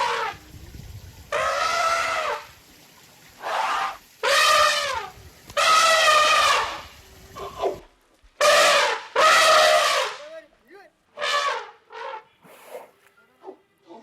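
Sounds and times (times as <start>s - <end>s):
pitched animal calls: 1.3s - 2.5s.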